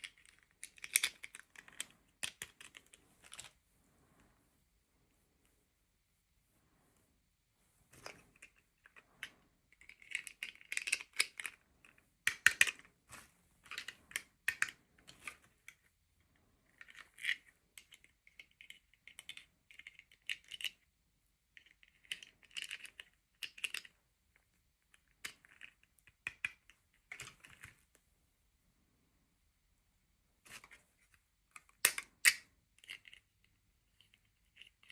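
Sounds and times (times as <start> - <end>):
plastic toy parts clicking: 0.0 - 3.6, 8.0 - 12.9, 13.6 - 15.8, 16.7 - 20.8, 21.6 - 24.0, 24.9 - 27.7, 31.5 - 34.9.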